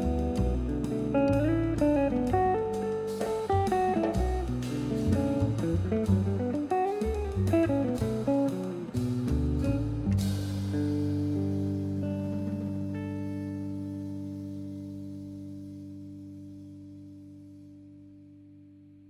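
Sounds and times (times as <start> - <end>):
steady drum beat: 0.0 - 12.8
plucked guitar: 0.0 - 18.6.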